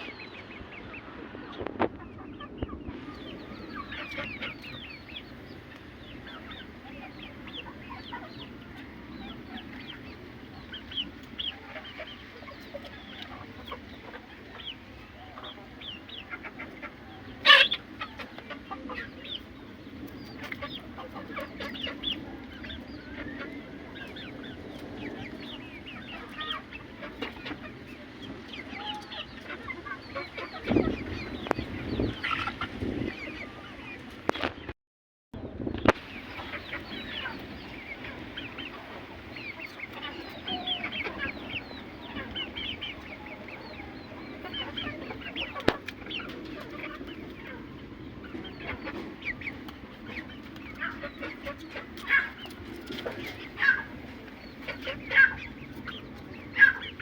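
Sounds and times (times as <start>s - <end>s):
chickens clucking: 0.0s - 34.7s, 35.6s - 57.0s.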